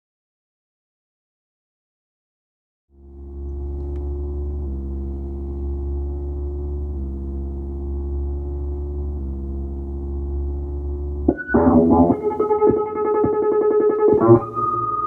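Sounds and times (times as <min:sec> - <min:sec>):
synthesizer low drone: 0:03.0 - 0:15.0.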